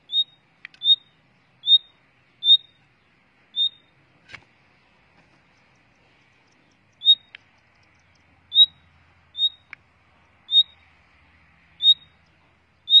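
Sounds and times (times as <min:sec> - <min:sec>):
bird whistled call notes: 0:00.0 - 0:02.8, 0:03.5 - 0:03.9, 0:07.0 - 0:07.4, 0:08.5 - 0:08.8, 0:09.4 - 0:09.7, 0:10.5 - 0:10.8, 0:11.8 - 0:12.2
faint clicks: 0:05.2 - 0:08.3.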